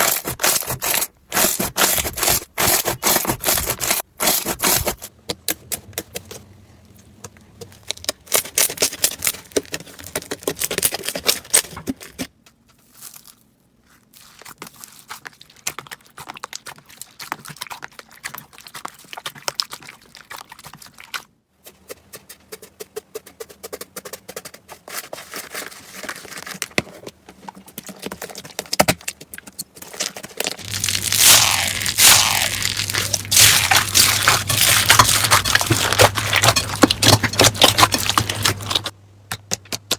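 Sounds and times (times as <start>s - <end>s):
slime squished by hand: 30.6s - 38.9s.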